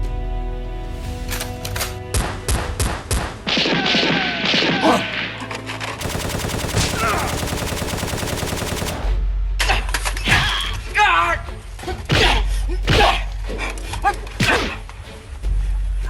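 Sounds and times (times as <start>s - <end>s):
gunshots: 2.2s - 5.2s, 6.0s - 9.2s
automatic gunfire: 6.0s - 9.2s.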